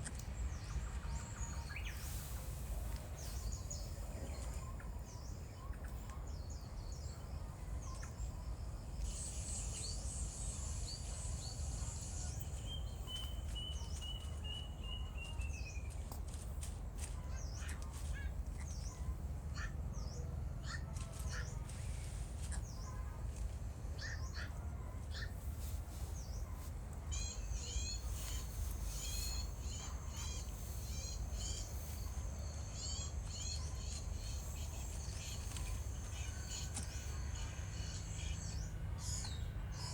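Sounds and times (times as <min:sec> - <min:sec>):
birds chirping: 0:00.0 - 0:39.9
bird trill: 0:27.1 - 0:39.9.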